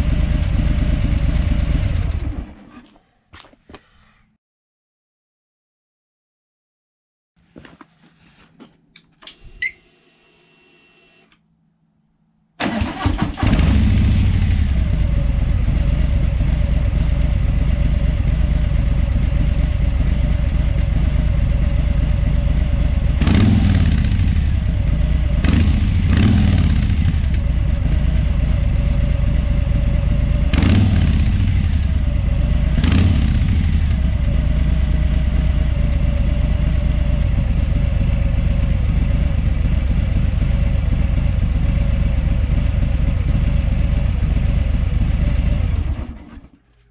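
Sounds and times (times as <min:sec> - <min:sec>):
motorcycle engine idling: 0:00.0 - 0:02.7, 0:12.6 - 0:46.4
low ignition hum: 0:00.0 - 0:02.9, 0:12.6 - 0:46.7
short beep: 0:09.6 - 0:09.9
starter cranking: 0:12.6 - 0:13.9
engine throttle blips: 0:12.6 - 0:46.6.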